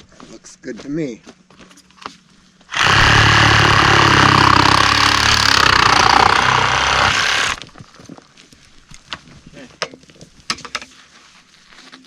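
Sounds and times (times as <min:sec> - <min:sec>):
power saw cutting pipe: 0:02.7 - 0:07.6.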